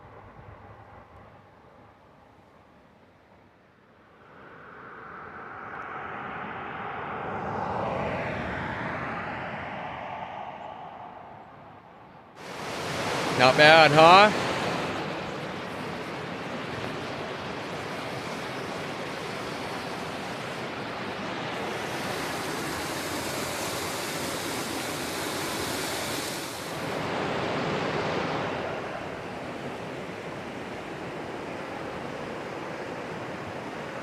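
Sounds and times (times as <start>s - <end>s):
bright water hiss: 12.4s - 34.0s
mountain stream rushing: 12.4s - 34.0s.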